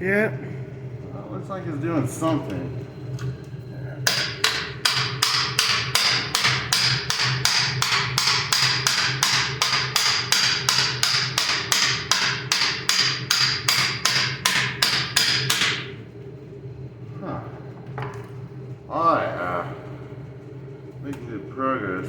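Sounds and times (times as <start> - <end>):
hammer striking steel: 4.1 - 15.9.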